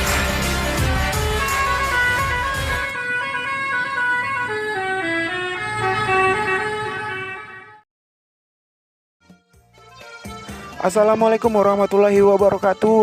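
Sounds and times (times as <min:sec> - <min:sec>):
bus horn playing multi-tone tune: 0:00.0 - 0:07.8.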